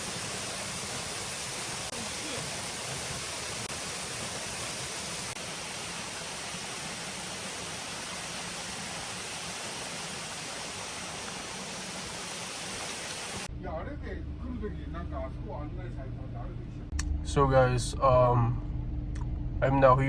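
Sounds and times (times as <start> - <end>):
waterfall rushing: 0.0 - 13.5.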